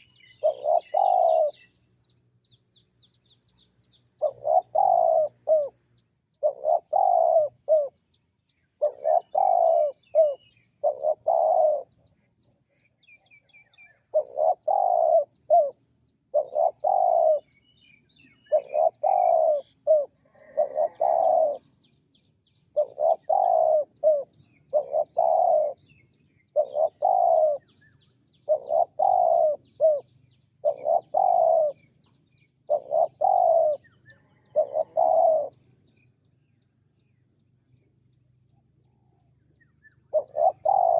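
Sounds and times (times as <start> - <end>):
dove cooing: 0.0 - 1.8, 4.1 - 8.0, 8.8 - 12.1, 13.5 - 17.6, 18.2 - 21.8, 22.6 - 32.0, 32.6 - 35.8, 38.9 - 40.9
small birds chirping: 0.0 - 40.9.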